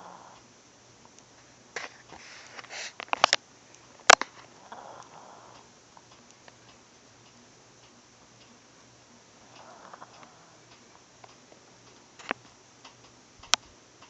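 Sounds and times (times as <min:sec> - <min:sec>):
dog snoring: 0:00.0 - 0:00.4, 0:04.6 - 0:05.7, 0:09.4 - 0:10.7.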